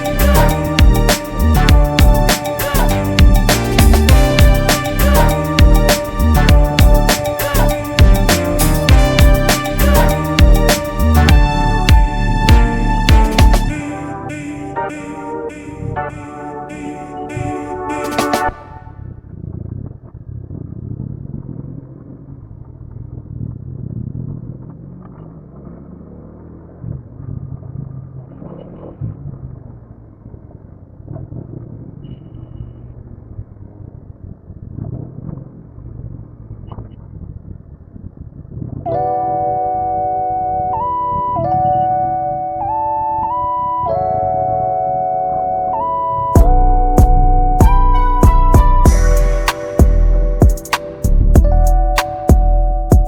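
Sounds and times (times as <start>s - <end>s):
sustained keyboard chords: 0.0s - 19.0s, 38.9s - 53.0s
heavy drum beat: 0.2s - 13.7s, 46.4s - 50.8s, 52.3s - 53.0s.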